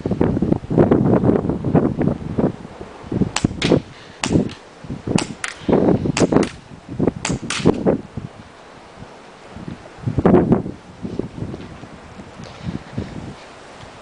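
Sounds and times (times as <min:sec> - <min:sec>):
airsoft guns firing: 0:03.4 - 0:04.6, 0:05.2 - 0:05.6, 0:06.2 - 0:06.6, 0:07.2 - 0:07.8.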